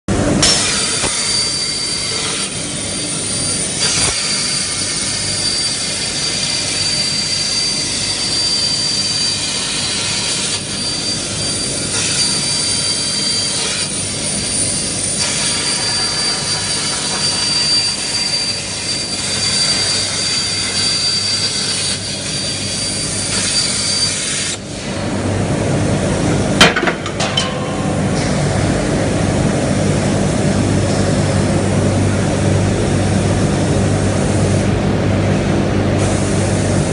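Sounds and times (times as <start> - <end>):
plasma cutter hiss and whine: 0.1 - 25.3, 36.0 - 36.9.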